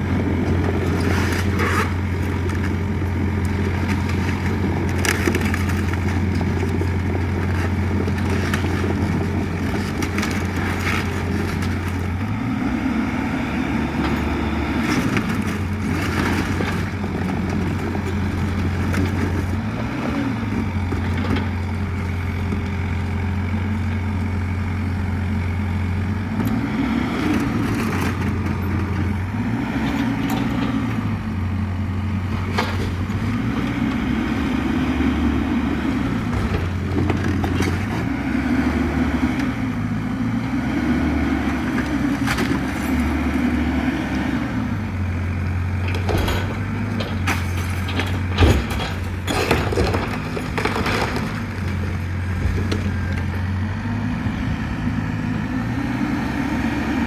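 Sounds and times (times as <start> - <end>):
excavator diesel engine running: 0.0 - 57.0
sharp cracks and knocks: 45.7 - 53.3.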